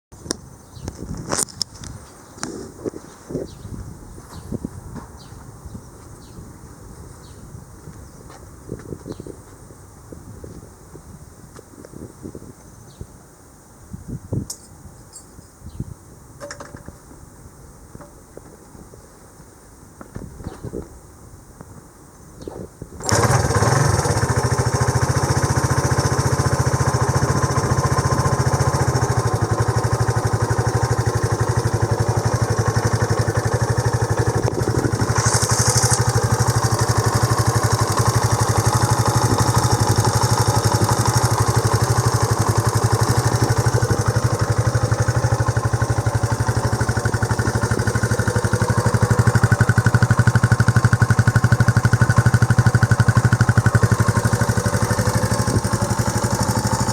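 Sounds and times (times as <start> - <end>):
motorcycle engine idling: 23.0 - 56.9.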